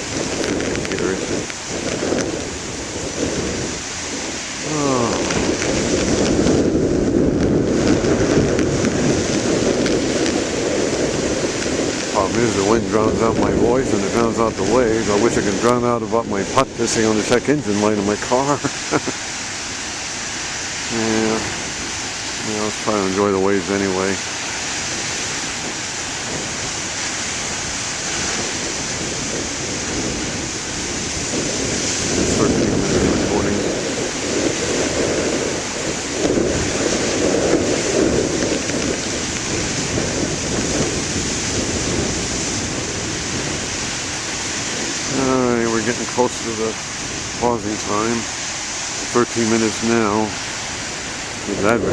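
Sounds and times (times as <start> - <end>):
strong wind buffeting microphone: 0.0 - 51.9.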